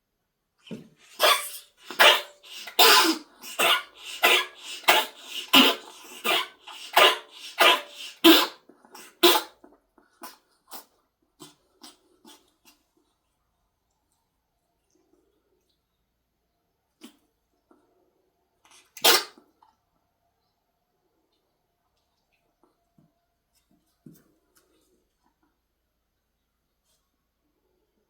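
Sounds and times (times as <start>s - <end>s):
pet coughing: 0.7s - 10.8s, 18.9s - 19.4s.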